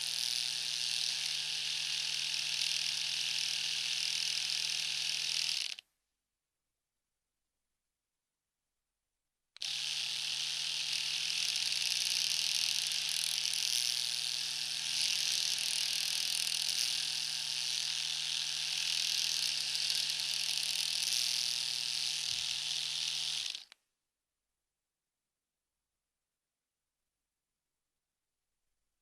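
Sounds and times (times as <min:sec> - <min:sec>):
electric razor running: 0:00.0 - 0:05.8, 0:09.6 - 0:23.7.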